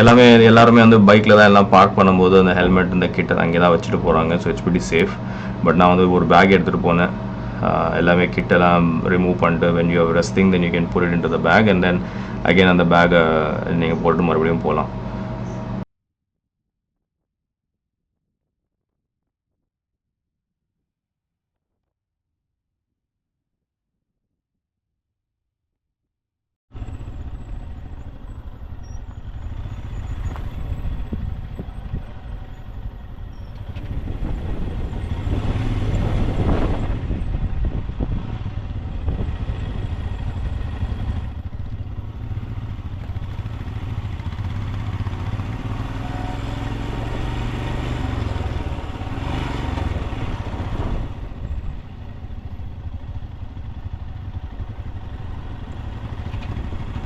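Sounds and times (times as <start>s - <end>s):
motorcycle riding: 0.0s - 15.8s, 26.7s - 57.0s
wind rumble on microphone: 27.4s - 57.0s.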